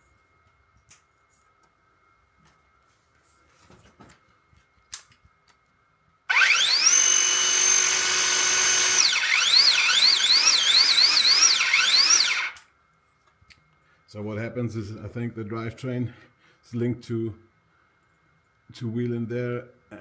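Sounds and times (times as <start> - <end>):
multitool motor whining: 6.3 - 12.6.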